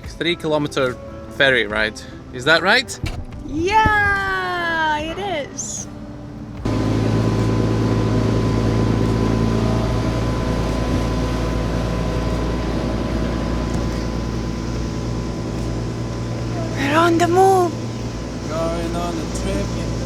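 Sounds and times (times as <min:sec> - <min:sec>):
low engine drone: 0:06.4 - 0:20.0.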